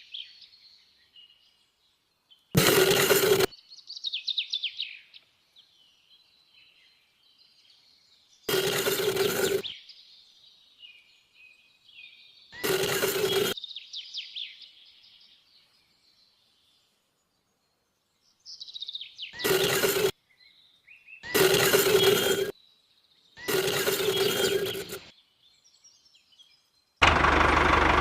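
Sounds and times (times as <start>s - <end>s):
small birds chirping: 0.0s - 27.0s
loud noise burst with low hum: 27.0s - 28.0s.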